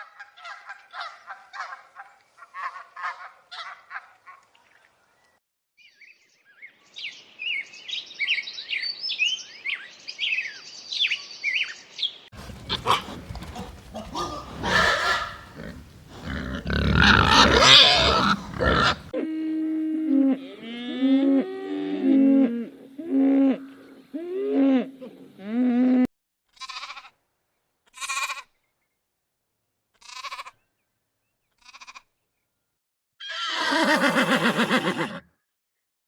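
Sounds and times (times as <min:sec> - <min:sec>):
loud rough animal call: 0:12.4 - 0:19.1, 0:33.2 - 0:35.2
low pitch-bending animal calls: 0:12.4 - 0:19.1.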